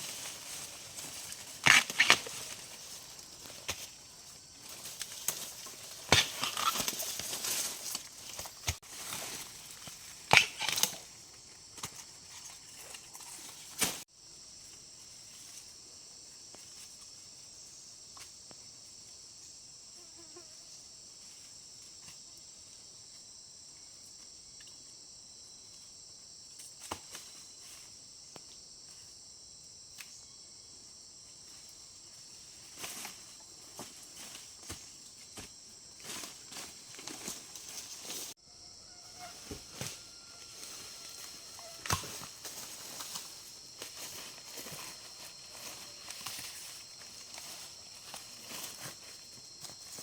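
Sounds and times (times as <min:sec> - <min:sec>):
high-pitched insect chorus: 0:00.0 - 0:50.0.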